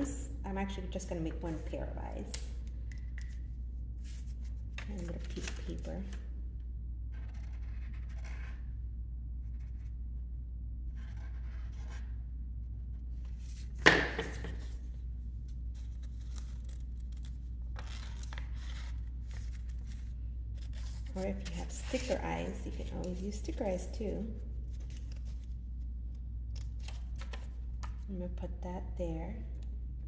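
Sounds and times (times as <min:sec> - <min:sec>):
steady low hum: 0:00.0 - 0:30.0
paper rustling and scratching: 0:04.0 - 0:06.2, 0:13.2 - 0:25.6.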